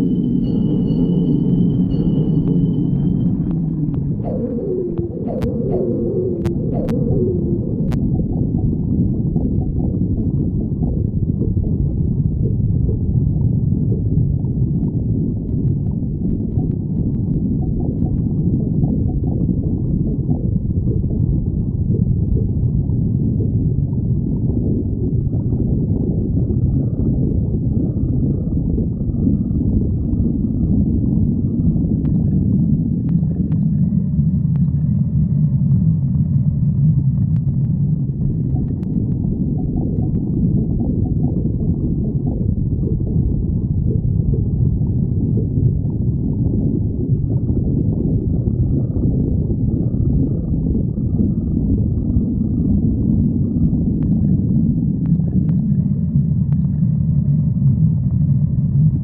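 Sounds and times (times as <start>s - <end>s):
stomach growling: 2.3s - 59.0s.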